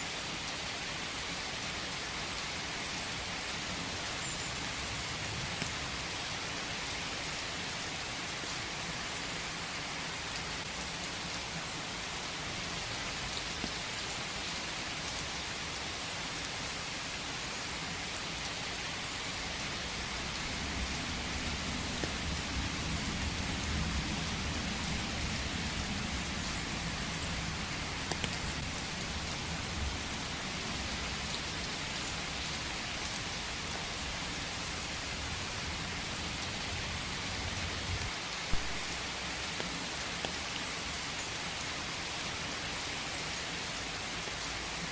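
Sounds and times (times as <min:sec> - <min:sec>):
steady rain falling: 0:00.0 - 0:44.9.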